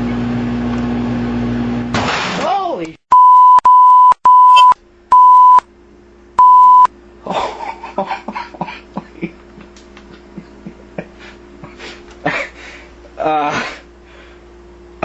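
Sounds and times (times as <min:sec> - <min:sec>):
microwave oven beeping: 0:03.1 - 0:05.7, 0:06.4 - 0:07.0
steady low hum: 0:04.4 - 0:15.0.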